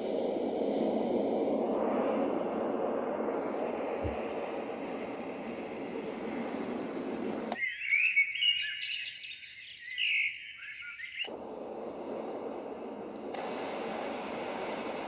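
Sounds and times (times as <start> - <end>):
white noise rushing: 0.0 - 7.6, 11.3 - 15.0
recorded birds chirping: 5.6 - 13.3.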